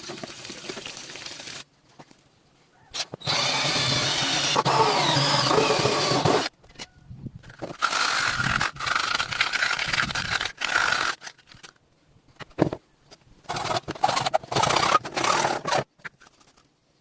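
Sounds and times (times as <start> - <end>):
power drill running: 3.2 - 6.5.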